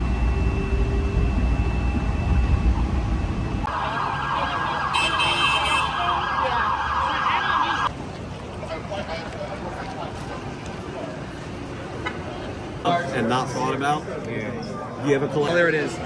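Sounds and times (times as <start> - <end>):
emergency vehicle siren: 0.0 - 7.9
street traffic rumble: 0.0 - 15.1.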